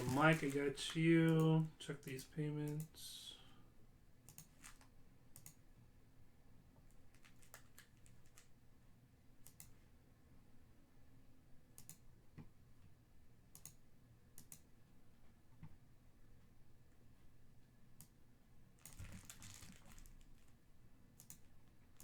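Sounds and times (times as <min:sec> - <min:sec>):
room hum: 0:00.0 - 0:22.0
mouse clicks: 0:04.3 - 0:04.5, 0:05.4 - 0:05.6, 0:09.4 - 0:09.8, 0:11.8 - 0:12.5, 0:13.5 - 0:13.8, 0:14.4 - 0:14.7, 0:21.2 - 0:21.4.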